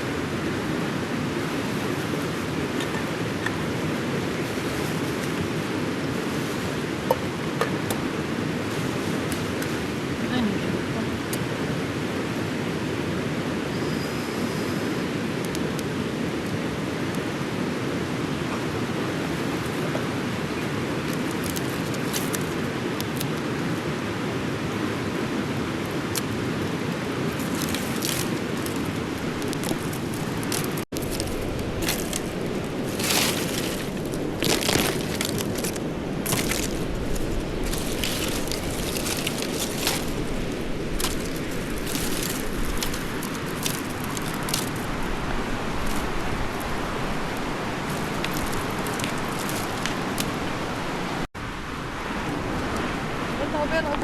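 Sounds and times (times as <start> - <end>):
river rushing: 0.0 - 53.8
crackles and rustles: 1.3 - 7.2, 7.8 - 10.2, 19.2 - 23.8, 25.8 - 51.3.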